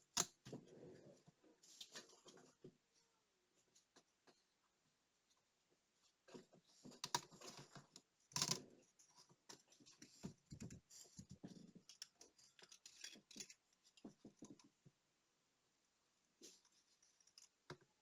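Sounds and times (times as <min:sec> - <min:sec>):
tools clicking and tapping watch parts: 0:09.5 - 0:14.6.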